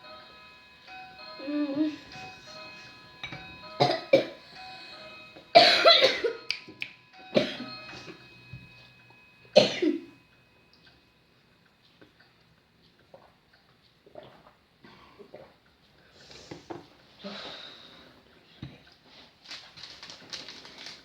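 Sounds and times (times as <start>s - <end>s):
person coughing: 3.8s - 4.4s, 5.6s - 6.4s, 7.4s - 7.7s, 9.6s - 10.1s.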